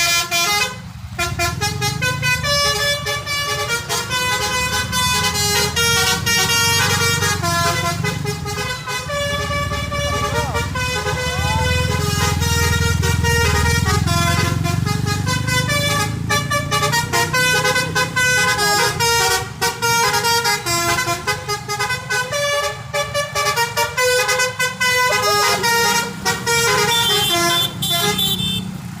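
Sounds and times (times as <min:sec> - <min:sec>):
musical bus horn melody: 0:00.0 - 0:28.8
bus engine hum: 0:00.0 - 0:29.0.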